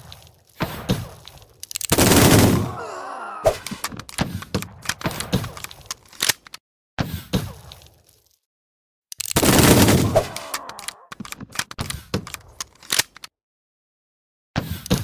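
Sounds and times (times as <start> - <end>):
gunshots: 1.9 - 2.8, 9.4 - 10.9.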